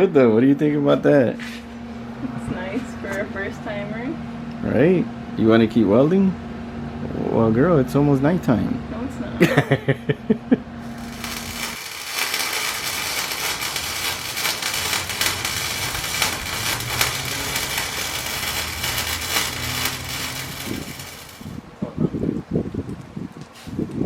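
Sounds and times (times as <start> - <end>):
welding arc crackling: 10.8 - 21.7.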